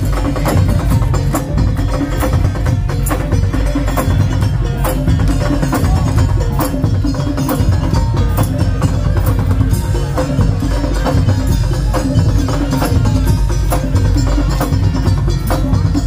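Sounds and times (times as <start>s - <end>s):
drums: 0.0s - 16.0s
heavy bass: 0.0s - 16.0s.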